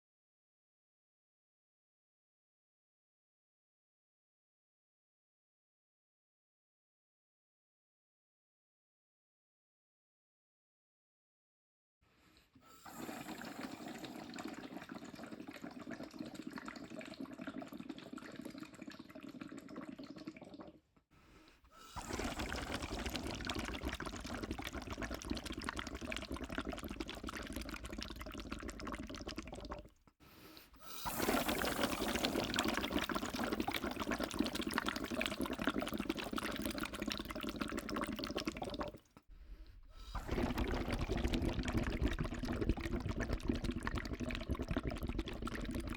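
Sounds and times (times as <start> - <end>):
liquid pouring and splashing: 12.9 - 20.7, 30.8 - 45.9.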